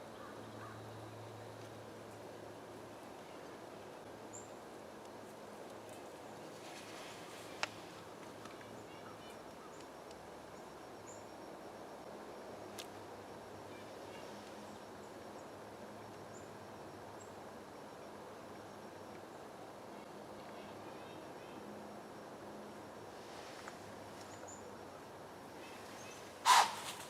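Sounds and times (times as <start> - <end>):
steady hiss: 21.9 - 27.0.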